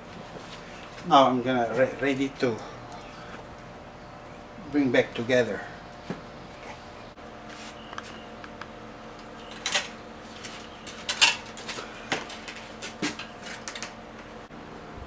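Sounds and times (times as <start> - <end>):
bike wheel parts clinking: 9.5 - 14.3.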